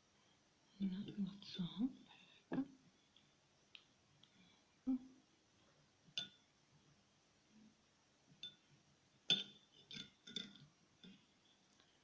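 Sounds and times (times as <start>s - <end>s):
light clinks against a bowl: 8.4s - 8.7s, 9.3s - 11.2s.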